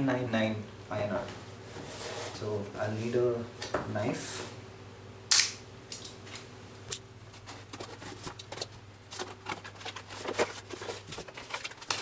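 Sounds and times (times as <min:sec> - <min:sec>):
cardboard box clicks and rustles: 0:07.4 - 0:12.0.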